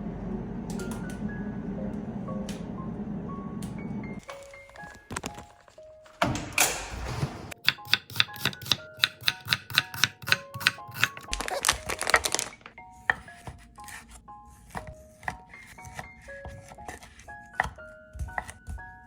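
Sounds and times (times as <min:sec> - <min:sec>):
background music: 0:00.7 - 0:19.0
knife chopping on cutting board: 0:07.6 - 0:11.4, 0:14.7 - 0:18.9.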